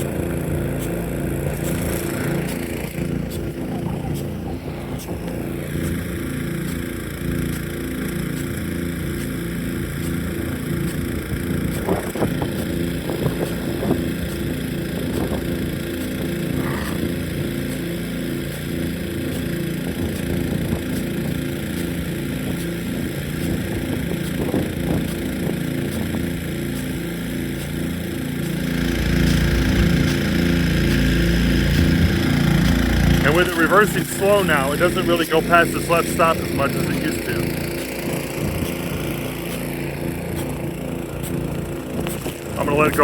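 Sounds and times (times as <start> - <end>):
engine running steadily: 0.0 - 43.0
sprinkler spraying water: 0.0 - 43.0
wind rumble on microphone: 10.4 - 17.6, 19.9 - 26.6, 31.7 - 33.3, 38.1 - 39.0.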